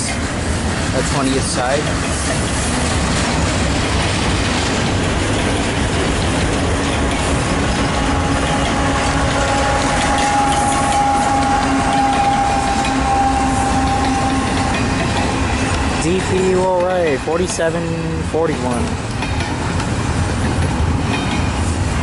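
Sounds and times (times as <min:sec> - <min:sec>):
freight train cars rolling: 0:00.0 - 0:22.0
high-pitched train squeal: 0:07.3 - 0:17.1.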